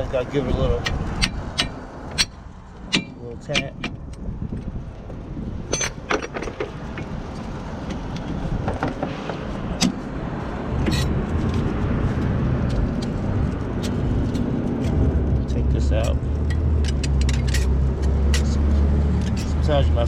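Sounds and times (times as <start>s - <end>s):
wind rumble on microphone: 0.0s - 20.0s
metallic taps and clinks: 5.7s - 7.1s.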